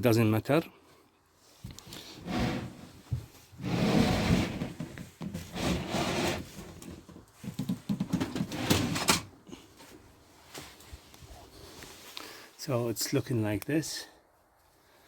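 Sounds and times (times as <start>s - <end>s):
wooden panels scraping and knocking: 2.2s - 9.3s.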